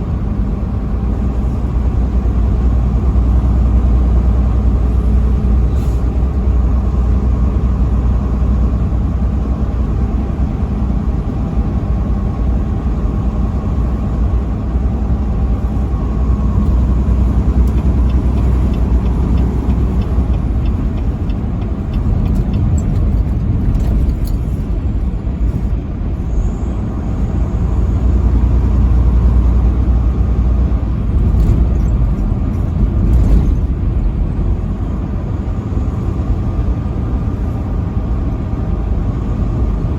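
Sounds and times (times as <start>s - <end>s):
vehicle engine and road rumble: 0.0s - 39.9s
faint ticks: 17.6s - 22.9s.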